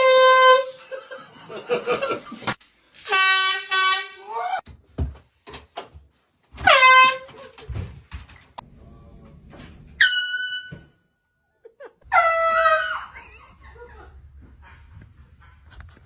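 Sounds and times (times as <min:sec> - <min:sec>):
air horn blasts: 0:00.0 - 0:00.8, 0:03.0 - 0:04.4, 0:06.6 - 0:07.3.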